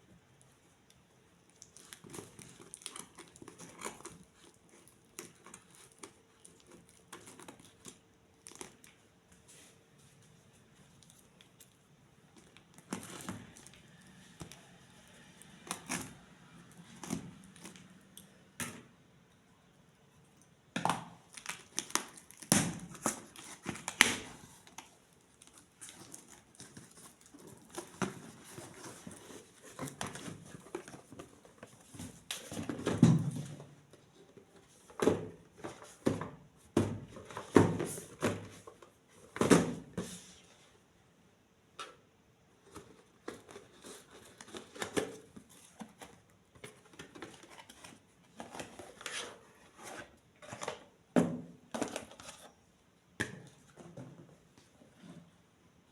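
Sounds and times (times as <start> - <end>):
cardboard and plastic crinkling: 1.4 - 18.2, 21.2 - 40.6, 42.6 - 51.0.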